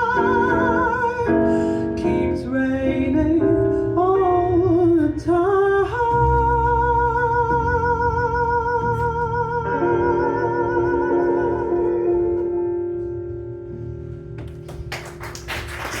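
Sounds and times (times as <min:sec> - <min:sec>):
people clapping: 0:14.4 - 0:16.0.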